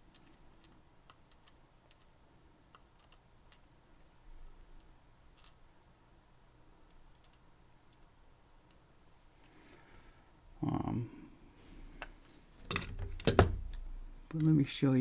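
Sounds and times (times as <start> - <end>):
small lock parts clicking: 0.0 - 3.7, 4.8 - 5.6, 6.9 - 8.8, 12.6 - 14.5.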